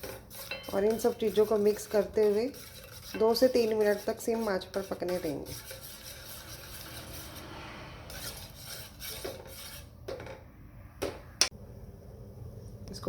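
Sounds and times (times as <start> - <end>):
spoon stirring in saucepan: 0.0 - 10.4.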